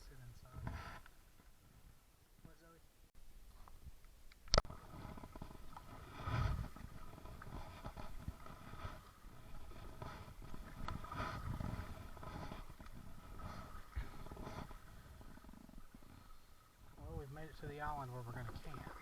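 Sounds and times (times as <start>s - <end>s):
paddle strokes splashing water: 4.6s - 19.0s
wind rumble on microphone: 4.7s - 16.1s.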